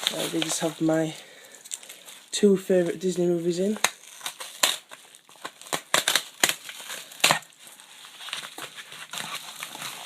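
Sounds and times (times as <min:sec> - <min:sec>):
packaging being torn open: 0:03.7 - 0:10.0.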